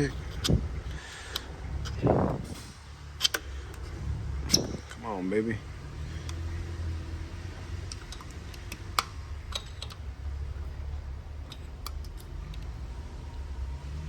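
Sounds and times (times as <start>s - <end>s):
pick tool metal clicks: 0.0s - 5.1s, 7.8s - 10.7s, 11.4s - 12.7s
steady low hum: 0.0s - 14.0s.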